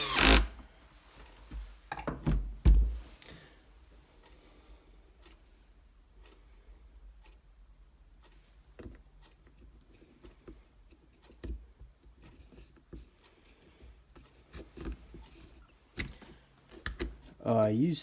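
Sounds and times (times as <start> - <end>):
light clicks and knocks of plastic parts: 5.2 - 17.4.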